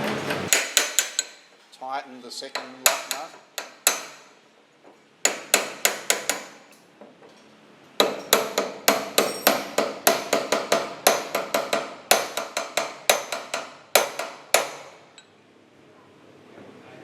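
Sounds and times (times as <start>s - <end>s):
hammer tapping on metal: 0.4s - 1.4s, 2.5s - 4.3s, 5.2s - 6.6s, 8.0s - 15.3s.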